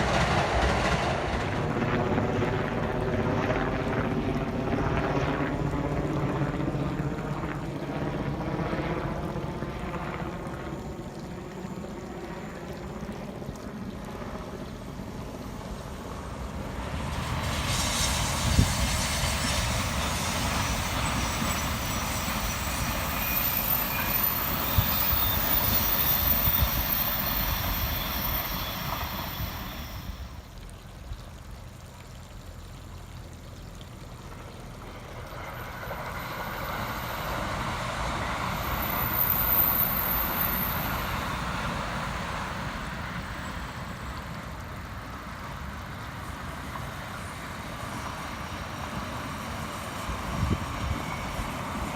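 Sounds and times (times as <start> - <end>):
trains rumbling past: 0.0 - 8.3, 14.9 - 30.6, 34.5 - 51.9.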